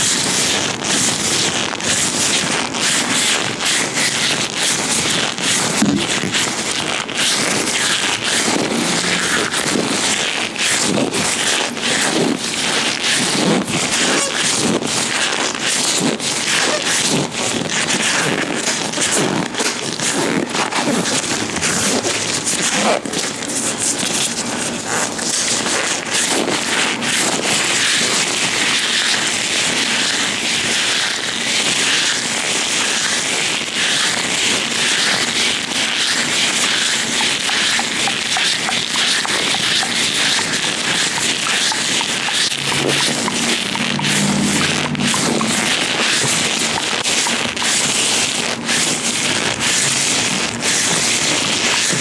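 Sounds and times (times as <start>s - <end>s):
latex gloves rubbing crackling: 36.5s - 47.9s.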